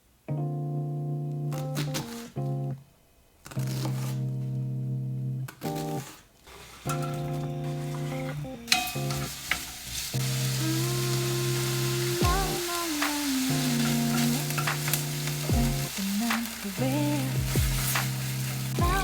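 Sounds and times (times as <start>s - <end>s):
food sizzling in a pan: 6.5s - 19.0s
utensil clicking against pan: 12.4s - 15.6s.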